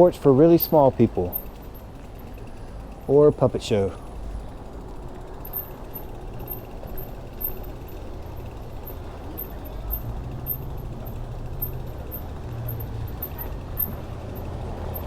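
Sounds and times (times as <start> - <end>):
traffic rumble: 0.0 - 15.0
passing car engine: 5.4 - 15.0.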